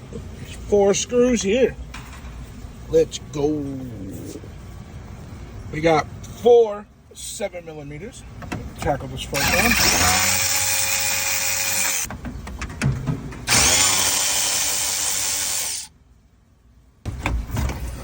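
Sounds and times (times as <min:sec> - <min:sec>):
power drill spinning: 0:09.4 - 0:12.1, 0:13.5 - 0:15.9.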